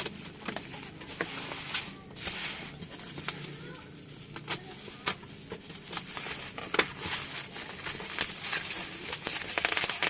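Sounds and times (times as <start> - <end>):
bubble wrap crackling: 0.0 - 10.0
plastic packaging crinkling: 0.0 - 10.0.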